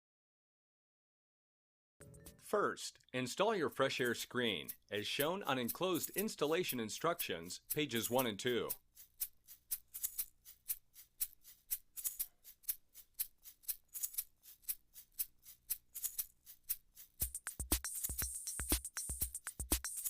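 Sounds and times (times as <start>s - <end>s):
shaker-like percussion rhythm: 3.8s - 20.0s
heavy drum beat: 17.2s - 20.0s.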